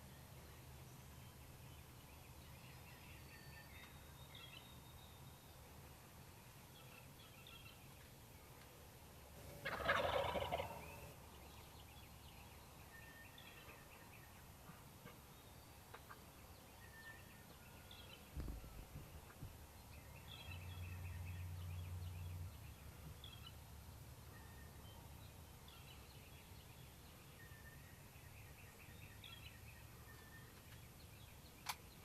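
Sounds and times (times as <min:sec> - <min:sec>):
turkey gobbling: 0:09.5 - 0:11.1.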